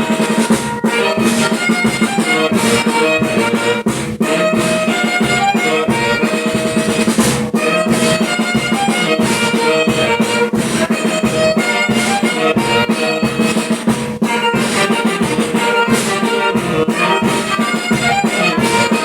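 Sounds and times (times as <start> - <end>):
brass band with drum kit: 0.0 - 19.0.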